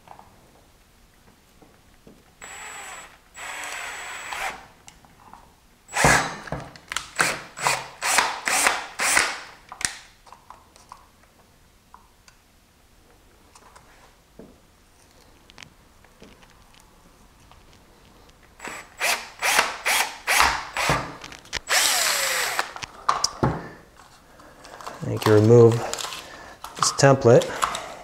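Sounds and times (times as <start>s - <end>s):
power drill drilling: 2.4s - 4.6s, 5.9s - 6.4s, 7.2s - 9.4s, 18.6s - 21.0s, 21.6s - 22.8s.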